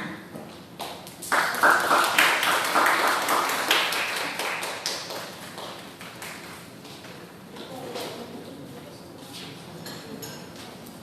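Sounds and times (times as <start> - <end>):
audience clapping: 1.2 - 6.7.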